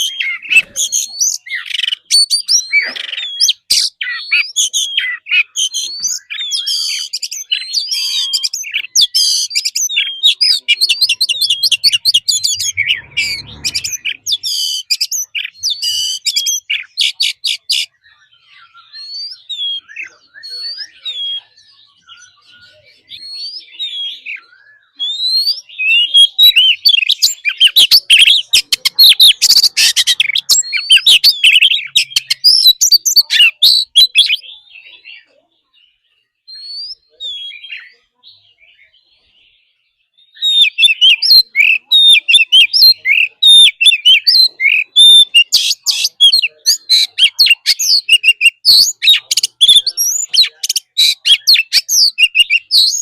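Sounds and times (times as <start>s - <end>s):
scratchy bird chatter: 0.0s - 18.0s, 25.0s - 35.4s, 40.4s - 53.0s
bird singing whistled song: 0.0s - 53.0s.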